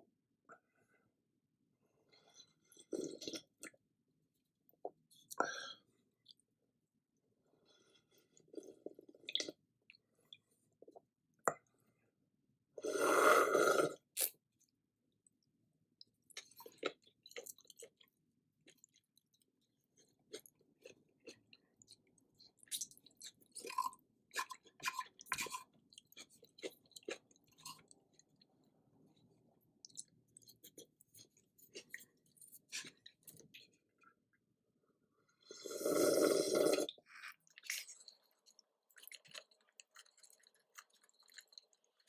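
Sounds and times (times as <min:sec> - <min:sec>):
soft chewing: 0:04.8 - 0:06.5, 0:07.7 - 0:11.7, 0:16.0 - 0:34.3, 0:36.8 - 0:42.0
loud slurp: 0:12.8 - 0:14.0, 0:35.5 - 0:37.0.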